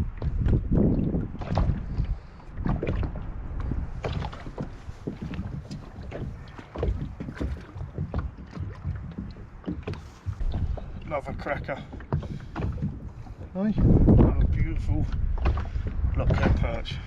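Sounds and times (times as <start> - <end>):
rumbling water and wind: 0.0 - 17.0
knocks on plastic boat: 4.0 - 14.6.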